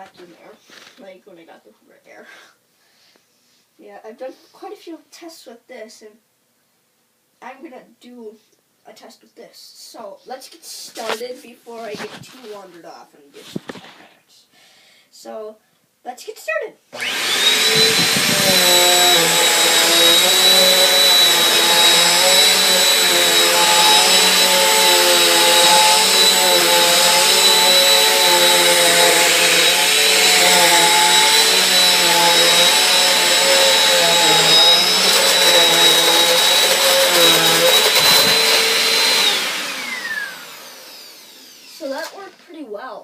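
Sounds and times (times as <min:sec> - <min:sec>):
upright vacuum cleaner whining: 0:17.0 - 0:42.5.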